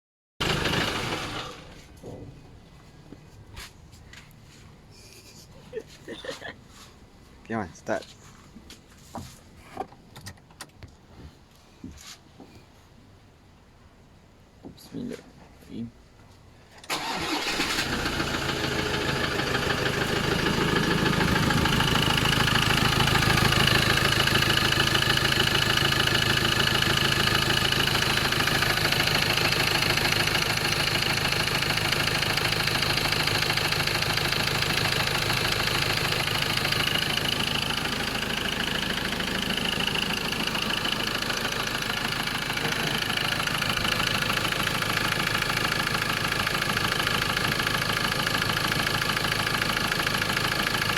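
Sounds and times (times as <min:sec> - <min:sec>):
rapid engine knocking: 0:00.4 - 0:01.5, 0:18.3 - 0:50.9
diesel engine starting and idling: 0:00.4 - 0:02.0, 0:16.8 - 0:50.9.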